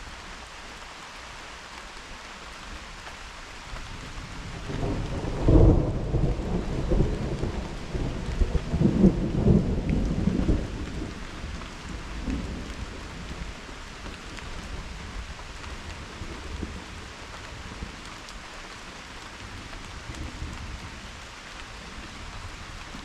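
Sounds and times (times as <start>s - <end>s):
steady rain: 0.0s - 23.0s
thunder rumbling: 4.4s - 13.5s.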